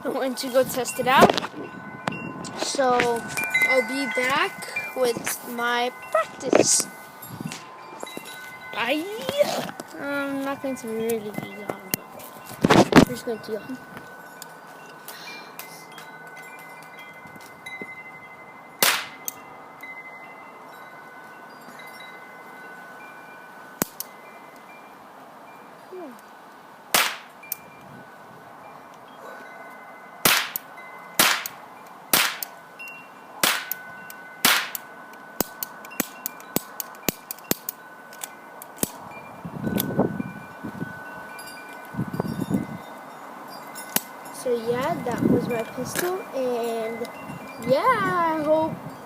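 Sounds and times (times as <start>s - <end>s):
pistol shots: 30.2s - 30.6s, 31.2s - 32.5s, 33.4s - 33.8s, 34.4s - 34.8s.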